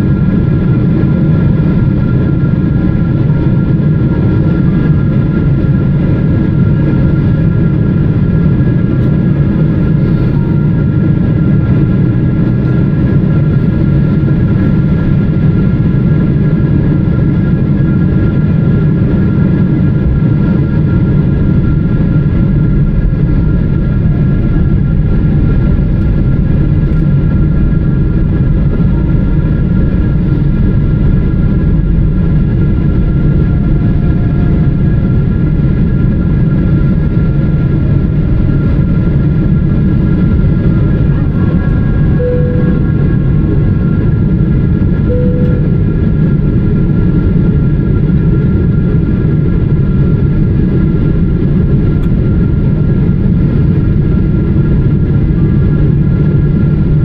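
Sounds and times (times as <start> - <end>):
airliner cabin rumble: 0.0 - 57.0
faint hum tones: 0.0 - 57.0
short cabin chime tones: 41.7 - 43.4, 45.1 - 46.0.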